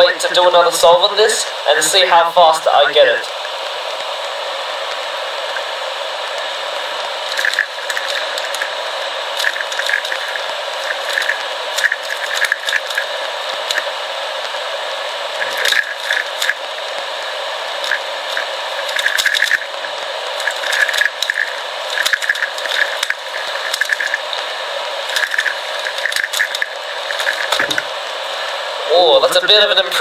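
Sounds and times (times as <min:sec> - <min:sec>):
puzzle cube layers clicking: 0:07.3 - 0:08.8, 0:09.4 - 0:13.1, 0:20.4 - 0:24.2, 0:25.1 - 0:27.9.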